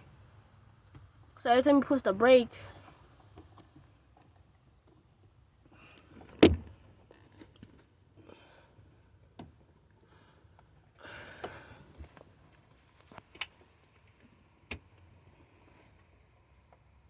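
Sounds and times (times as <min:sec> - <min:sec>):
faint handling and rustling: 0:02.6 - 0:17.0.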